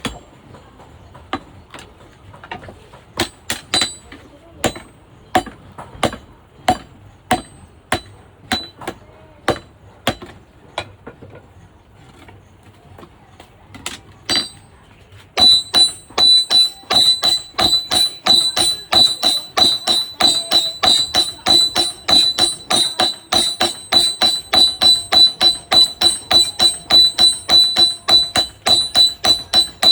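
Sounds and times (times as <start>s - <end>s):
hammer ringing on anvil: 3.2s - 10.3s, 14.3s - 14.7s, 15.4s - 29.9s.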